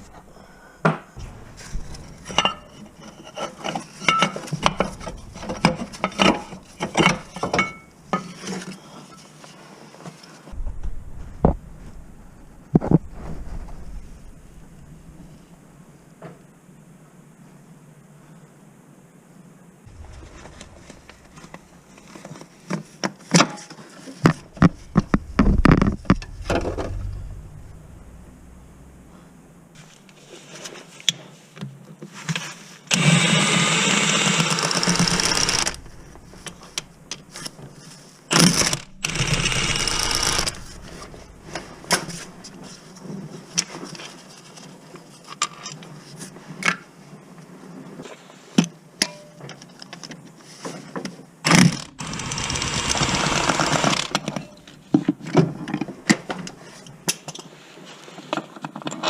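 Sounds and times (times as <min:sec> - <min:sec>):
cordless power tool running: 0:32.9 - 0:36.0, 0:38.4 - 0:40.9, 0:52.0 - 0:54.2.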